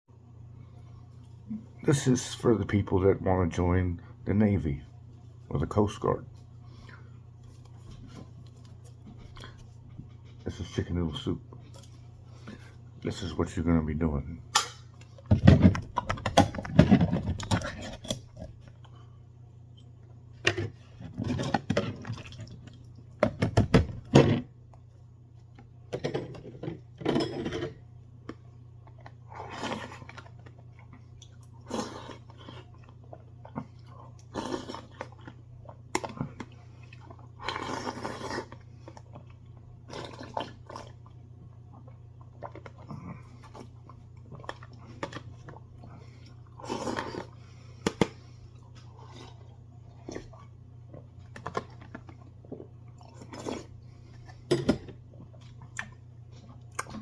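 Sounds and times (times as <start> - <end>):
steady low hum: 0.1 - 57.0
chewing: 28.8 - 47.7, 55.1 - 57.0
slurping: 31.3 - 35.4, 36.3 - 41.2, 42.6 - 47.7.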